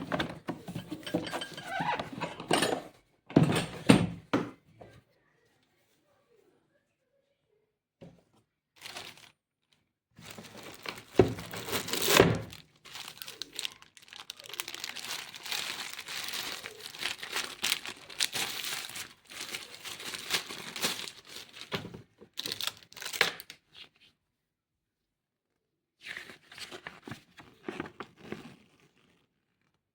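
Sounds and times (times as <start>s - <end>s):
packaging crinkling and tearing: 8.8s - 9.4s, 10.2s - 23.7s.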